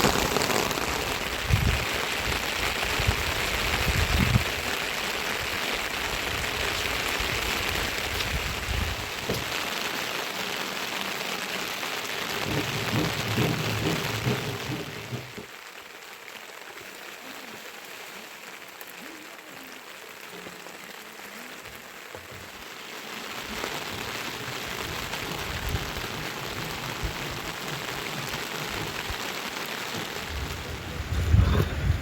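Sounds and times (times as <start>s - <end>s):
steady rain hissing: 0.0s - 32.0s
low rumbling: 30.2s - 32.0s.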